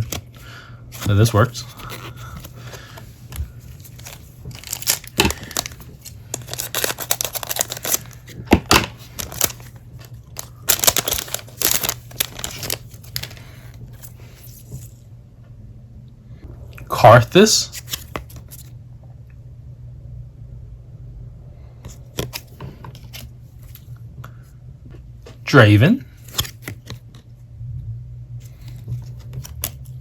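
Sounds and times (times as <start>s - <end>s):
cards being handled: 0.0s - 14.9s, 17.7s - 18.7s, 21.9s - 23.9s, 26.1s - 27.3s, 28.4s - 30.0s
foil wrapper tearing and crinkling: 3.8s - 8.4s, 9.0s - 13.5s.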